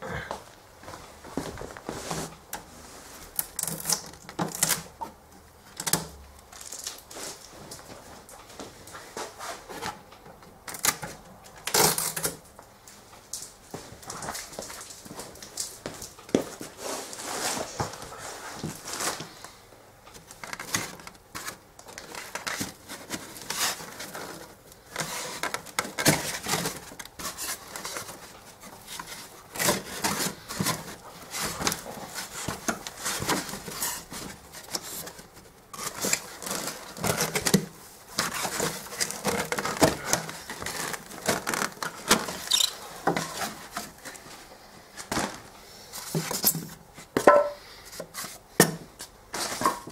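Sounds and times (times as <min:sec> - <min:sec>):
packing materials rustling: 0:13.4 - 0:47.2.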